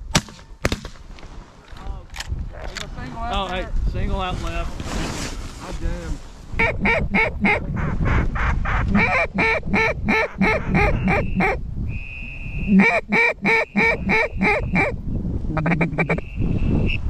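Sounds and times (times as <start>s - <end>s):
low wind noise: 0.0s - 17.0s
duck call quacks: 6.6s - 11.6s, 12.7s - 15.0s, 15.6s - 16.4s
high whistle-like tone: 11.0s - 14.0s, 16.1s - 17.0s.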